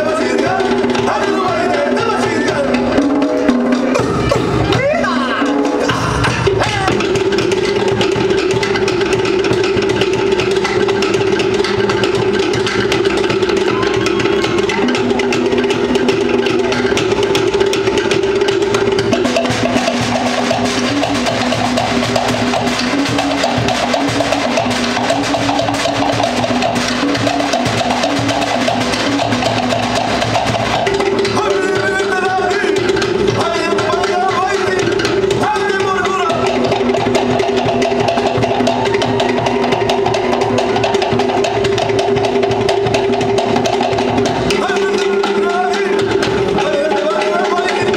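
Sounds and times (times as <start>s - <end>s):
fast percussion drumming: 0.0s - 47.9s.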